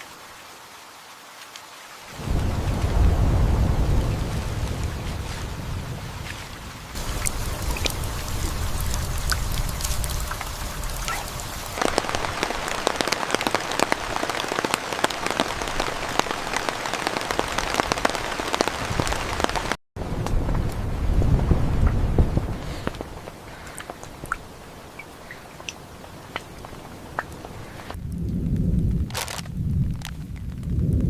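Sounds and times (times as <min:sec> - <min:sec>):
heavy rain falling: 0:00.0 - 0:31.0
low rumble: 0:02.2 - 0:12.7, 0:28.0 - 0:31.0.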